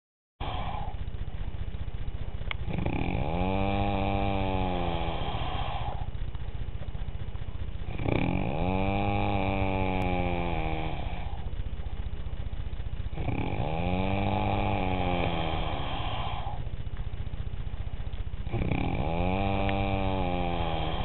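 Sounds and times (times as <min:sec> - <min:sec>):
person snoring with a rattle: 0:00.4 - 0:01.1, 0:02.5 - 0:06.2, 0:07.8 - 0:11.6, 0:13.0 - 0:16.8, 0:18.4 - 0:21.0.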